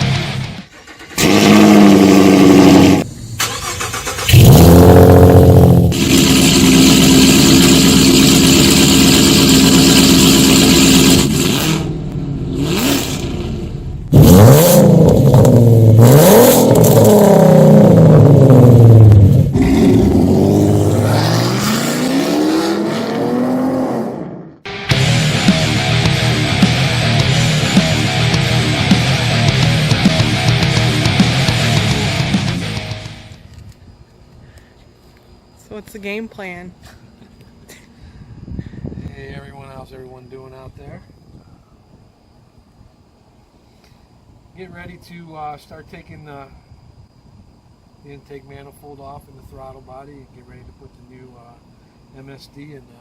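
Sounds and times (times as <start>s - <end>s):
car engine revving: 0.0s - 33.4s.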